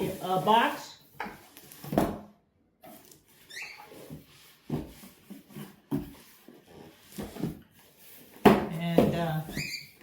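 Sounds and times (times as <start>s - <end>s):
cardboard packaging rubbing and knocking: 2.9s - 10.0s.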